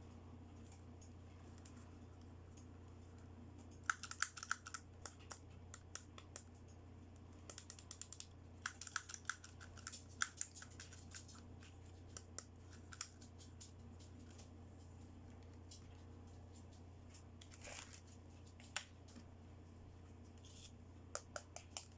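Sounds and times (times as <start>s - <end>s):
faint steady hum: 0.0s - 21.9s
plastic toys clicking and tapping: 3.6s - 14.5s.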